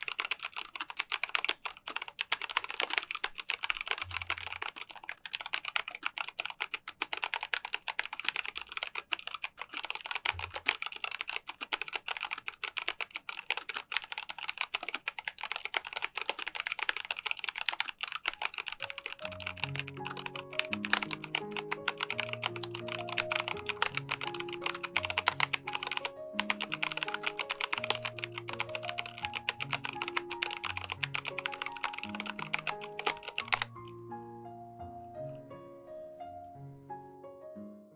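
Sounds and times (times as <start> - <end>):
mechanical keyboard typing: 0.0 - 33.8
soft piano music: 18.4 - 37.9.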